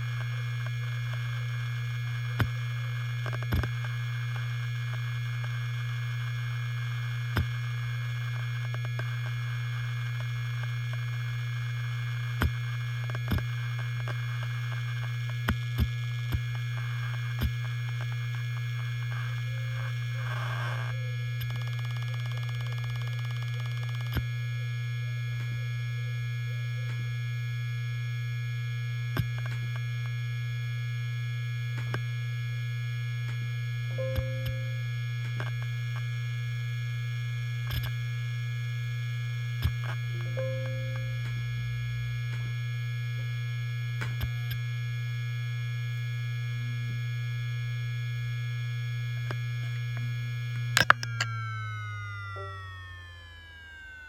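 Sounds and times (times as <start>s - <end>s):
hard disk spinning hum and whine: 0.0s - 54.0s.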